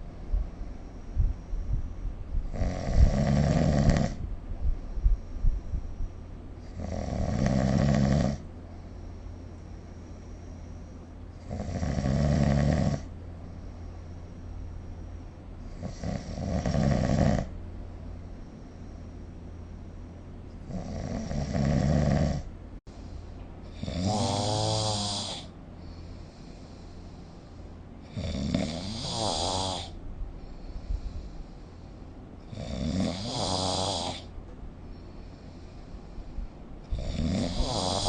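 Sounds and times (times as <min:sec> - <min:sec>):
person snoring: 0:02.5 - 0:04.2, 0:06.6 - 0:08.5, 0:11.4 - 0:13.1, 0:15.6 - 0:17.6, 0:20.6 - 0:22.5, 0:23.7 - 0:25.6, 0:28.0 - 0:30.0, 0:32.5 - 0:34.3, 0:36.8 - 0:38.0.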